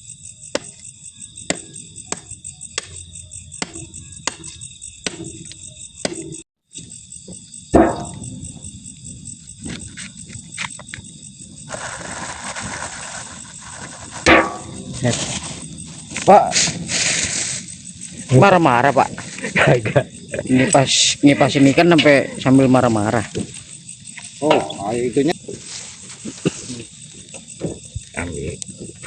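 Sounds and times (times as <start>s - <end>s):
crickets chirping: 0.0s - 29.0s
sharp light knocks: 7.7s - 8.7s.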